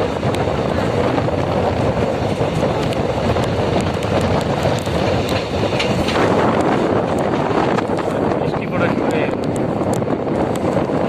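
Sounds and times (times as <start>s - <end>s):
train wheels rumbling on rail: 0.0s - 11.0s
sharp clicks and knocks: 2.3s - 8.1s.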